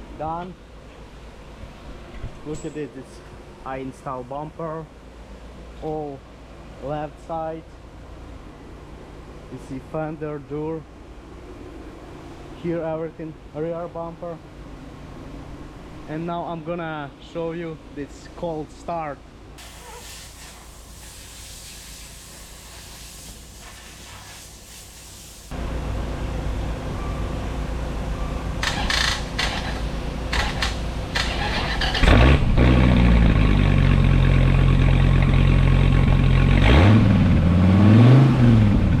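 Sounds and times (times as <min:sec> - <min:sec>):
car engine cranking and idling: 0:25.5 - 0:39.0.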